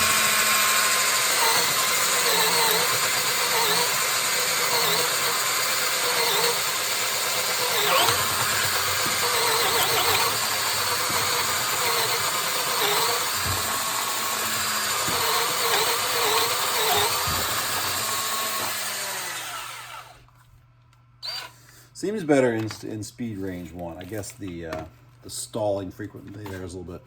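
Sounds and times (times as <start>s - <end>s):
cordless drill boring: 0.0s - 20.2s, 21.2s - 21.5s.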